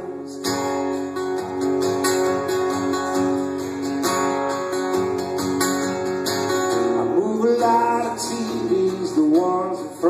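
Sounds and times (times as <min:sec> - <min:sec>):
acoustic guitar strumming: 0:00.0 - 0:10.0.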